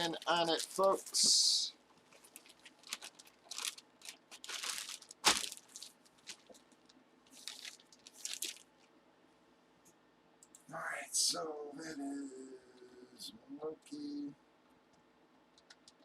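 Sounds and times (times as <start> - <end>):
plastic packaging crinkling: 0.0 - 1.3, 2.0 - 8.9.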